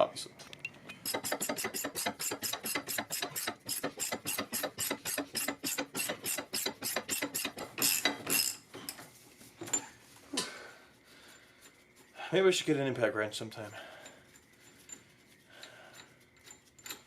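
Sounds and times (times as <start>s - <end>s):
metallic rattles: 0.9s - 9.0s
ratchet wrench clicking: 1.0s - 8.6s.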